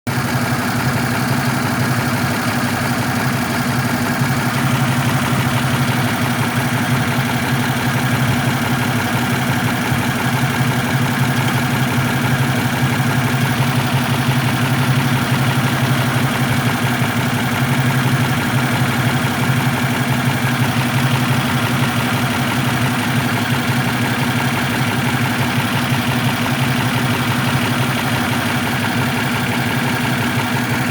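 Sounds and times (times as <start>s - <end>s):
engine idling: 0.1s - 30.9s.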